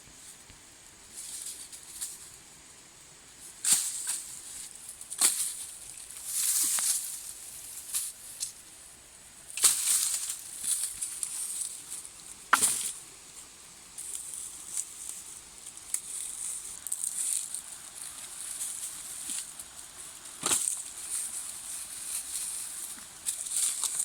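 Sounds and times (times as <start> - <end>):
rustling handling noise: 3.4 - 8.6, 9.5 - 13.1, 14.0 - 24.0.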